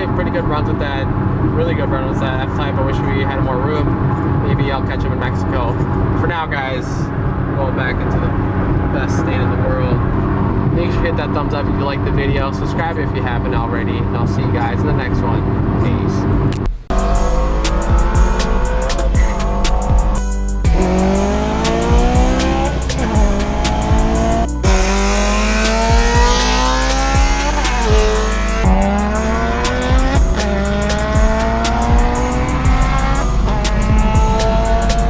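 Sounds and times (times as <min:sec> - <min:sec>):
car engine accelerating: 0:00.0 - 0:35.0
music: 0:16.2 - 0:35.0.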